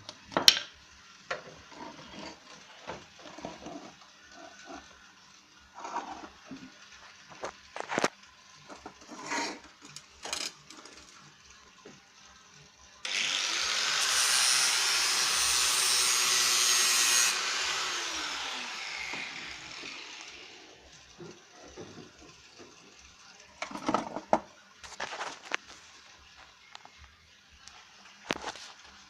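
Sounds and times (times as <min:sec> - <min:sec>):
angle grinder on sheet metal: 0:13.1 - 0:20.8
grinder disc spinning down: 0:13.1 - 0:21.0.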